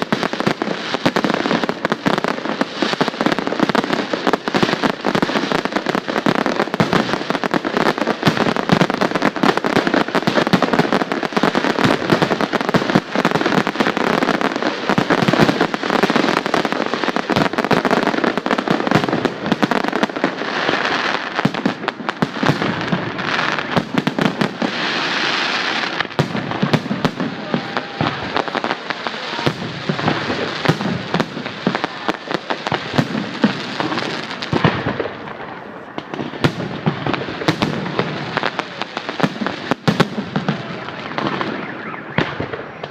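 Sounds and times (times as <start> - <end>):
fireworks hissing: 0.0 - 41.6
fireworks bursting and crackling: 0.0 - 42.9.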